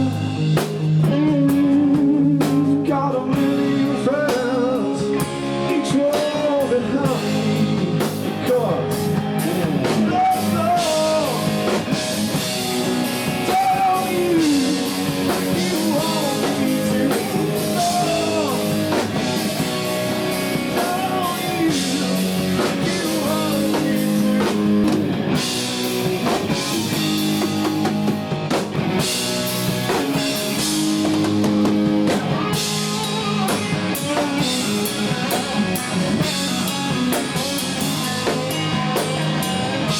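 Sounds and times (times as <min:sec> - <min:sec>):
person singing: 0:00.0 - 0:11.8, 0:13.2 - 0:24.9, 0:32.2 - 0:39.9
bass guitar: 0:00.0 - 0:39.9
drum kit: 0:00.0 - 0:39.9
electric guitar: 0:00.0 - 0:39.9.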